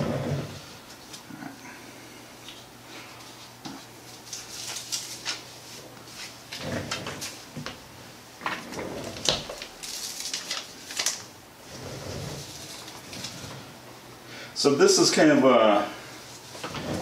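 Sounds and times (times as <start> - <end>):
tape crackling and scraping: 2.4 - 7.8, 8.4 - 13.9, 16.2 - 17.0.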